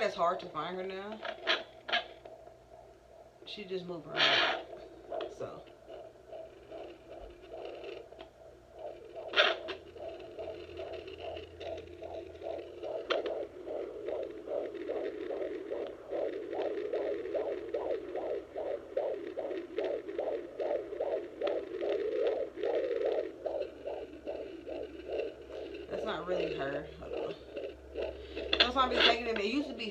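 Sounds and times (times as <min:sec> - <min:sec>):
fetal heartbeat on doppler speaker: 0:00.0 - 0:29.9.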